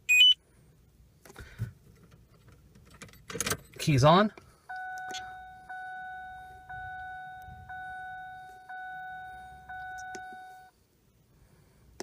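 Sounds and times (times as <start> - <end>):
dashboard warning chime: 4.7 - 10.7.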